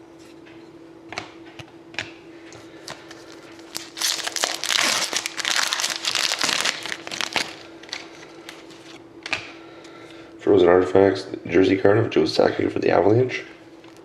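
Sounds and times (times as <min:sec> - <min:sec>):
foil wrapper crinkling and tearing: 0:02.9 - 0:09.0.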